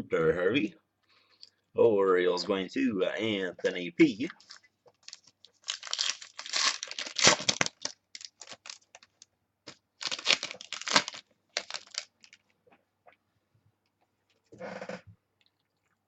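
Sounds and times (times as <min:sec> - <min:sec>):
plastic packaging rustling and crinkling: 0:04.4 - 0:12.5.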